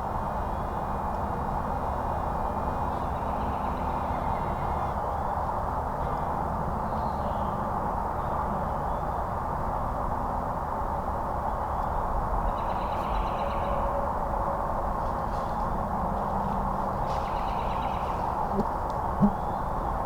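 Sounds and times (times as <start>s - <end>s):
outdoor background noise: 0.0s - 20.0s
faint bird calls: 17.0s - 20.0s.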